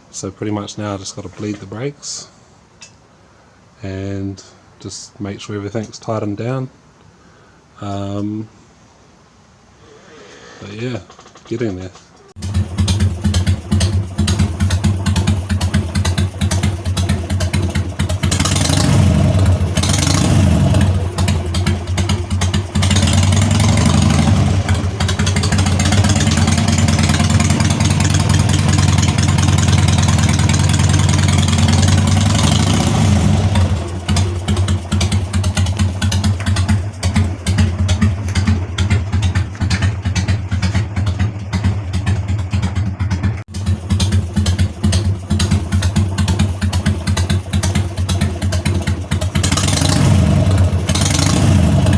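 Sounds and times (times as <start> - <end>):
motorcycle engine revving: 12.4 - 51.9.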